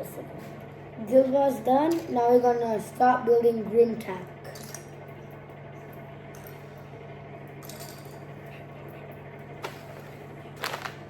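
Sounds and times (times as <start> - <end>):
plastic pieces being handled: 10.6 - 11.0.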